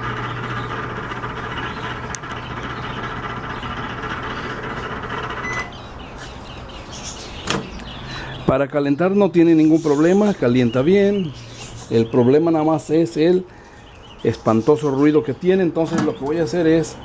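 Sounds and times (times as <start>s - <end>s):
loud mechanical noise: 0.0s - 5.8s
microwave oven humming: 0.0s - 5.9s
short beep: 5.4s - 5.7s.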